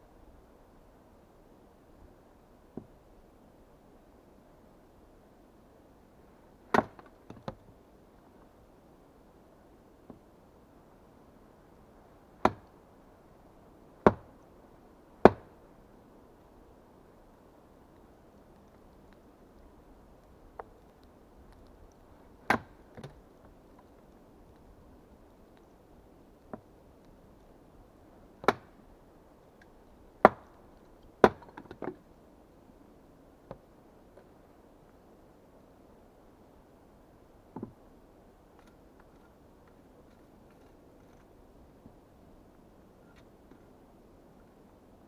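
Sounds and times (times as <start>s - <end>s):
axe chopping wood: 6.7s - 7.2s, 12.4s - 12.7s, 14.0s - 14.4s, 15.2s - 15.6s, 22.4s - 23.2s, 28.4s - 28.8s, 30.2s - 30.6s, 31.2s - 31.8s.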